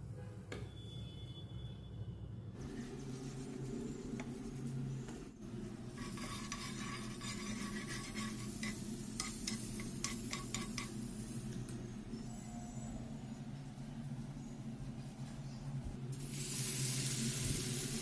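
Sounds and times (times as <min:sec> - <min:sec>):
steady low hum: 0:02.4 - 0:18.0
metal utensil scraping a pan: 0:05.9 - 0:11.0
food sizzling in a pan: 0:06.0 - 0:11.4, 0:16.2 - 0:18.0.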